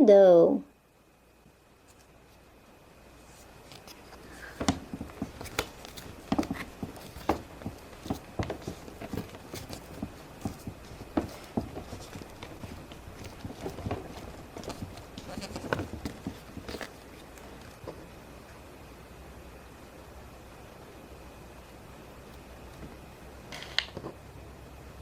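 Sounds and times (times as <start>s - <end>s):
plastic molds tapping and knocking: 4.4s - 17.1s.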